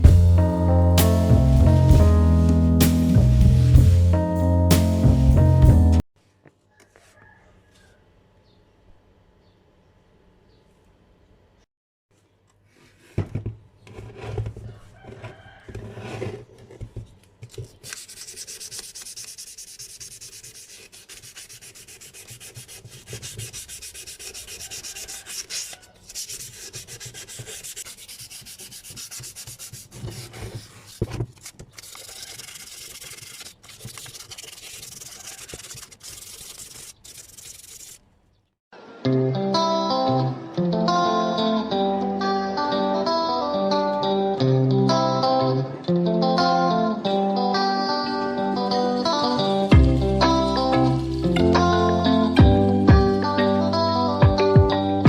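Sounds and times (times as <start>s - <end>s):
sandpaper rubbing steering wheel: 1.0s - 5.5s, 17.7s - 38.0s.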